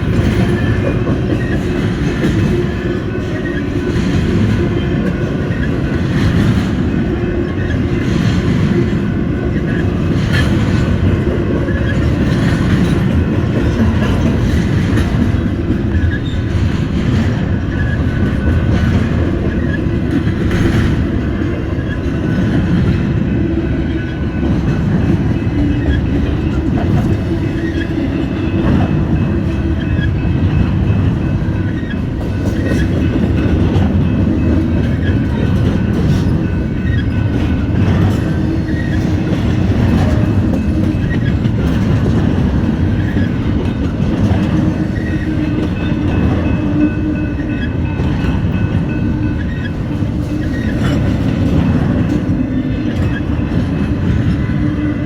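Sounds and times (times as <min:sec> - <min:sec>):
freight train rumbling past: 0:00.0 - 0:55.0
wheels clicking on rails: 0:00.0 - 0:55.0.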